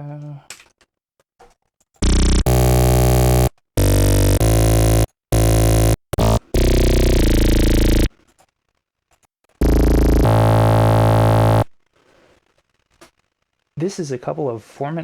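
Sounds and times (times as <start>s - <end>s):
noisy synthesizer tones: 2.0s - 8.1s, 9.6s - 11.7s.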